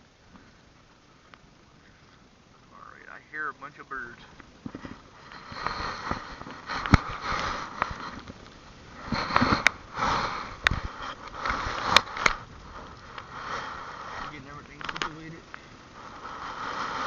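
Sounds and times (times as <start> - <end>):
person breathing and sniffing: 4.8 - 8.3, 9.0 - 14.3, 15.6 - 17.0.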